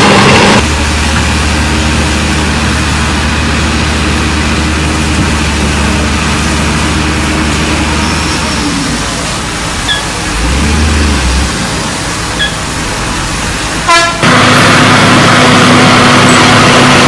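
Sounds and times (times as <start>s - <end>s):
heavy construction machinery running: 0.0s - 17.0s
loud horn-like blare: 13.8s - 17.0s.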